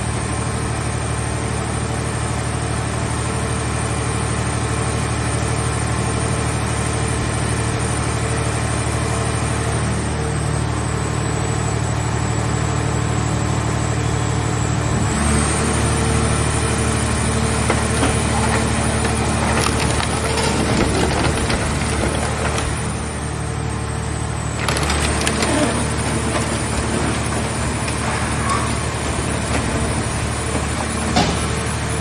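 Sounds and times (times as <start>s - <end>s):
sheet metal crackling and creaking: 17.8s - 22.9s, 24.6s - 31.8s.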